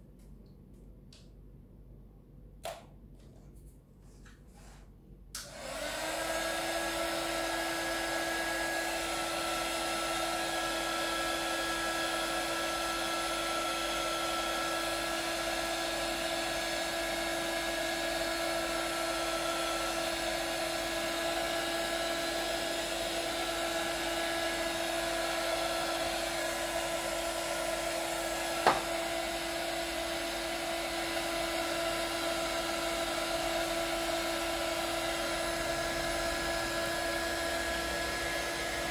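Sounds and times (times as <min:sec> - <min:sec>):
hot air gun blowing: 0:18.8 - 0:31.2.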